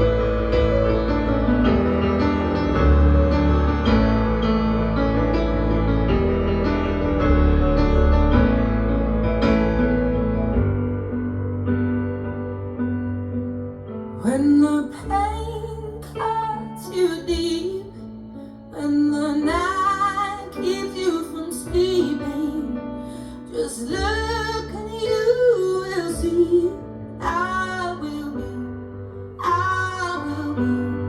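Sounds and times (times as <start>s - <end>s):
woman singing: 14.2s - 31.0s.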